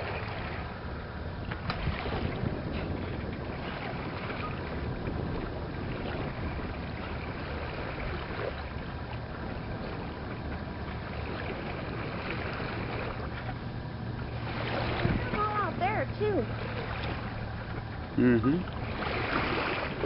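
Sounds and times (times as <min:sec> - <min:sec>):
wind and water rushing: 0:00.0 - 0:20.0
wind buffeting microphone: 0:00.0 - 0:20.0.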